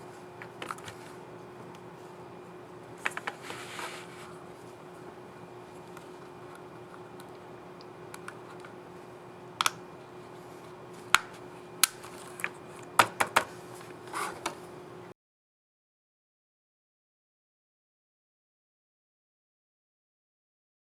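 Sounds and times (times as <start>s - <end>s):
steady low hum: 0.0s - 15.1s.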